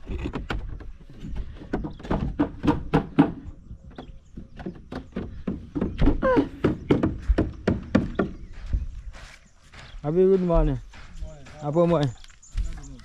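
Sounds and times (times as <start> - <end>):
uneven knocks and thuds: 0.2 - 9.0.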